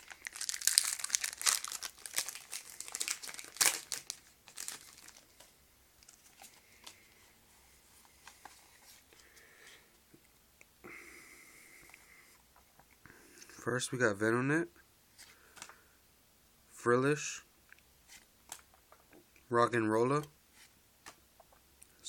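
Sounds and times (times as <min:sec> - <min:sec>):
foil wrapper crinkling and tearing: 0:00.0 - 0:07.0.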